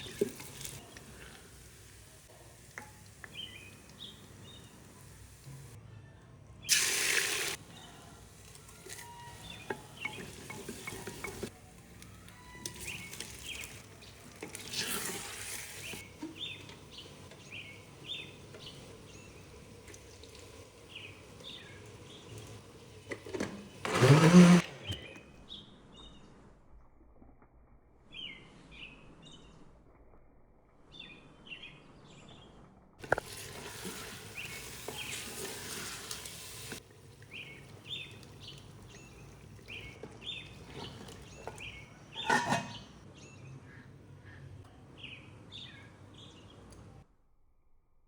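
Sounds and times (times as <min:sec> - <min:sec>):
cooking hissing and splashing: 0:00.0 - 0:05.8, 0:06.7 - 0:24.6, 0:33.0 - 0:42.5
small birds chirping: 0:00.0 - 0:05.8, 0:07.7 - 0:14.9, 0:15.8 - 0:23.0, 0:34.1 - 0:46.8.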